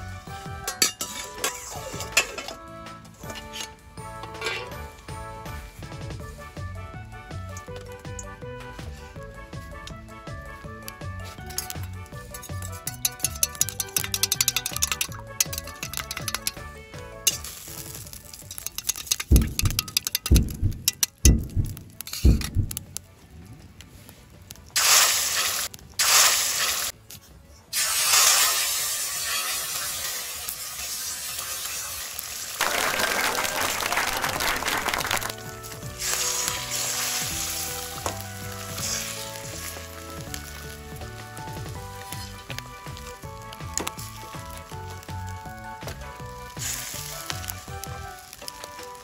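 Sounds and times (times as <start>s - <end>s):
wok frying: 0.0s - 23.3s, 24.5s - 27.0s, 27.8s - 49.0s
food sizzling in hot oil: 11.4s - 22.7s, 24.8s - 27.0s, 27.8s - 49.0s.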